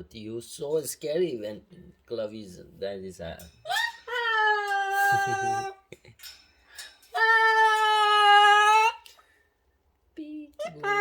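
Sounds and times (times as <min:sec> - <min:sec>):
cockatoo calling: 0:03.6 - 0:05.9, 0:07.1 - 0:09.2, 0:10.6 - 0:11.0.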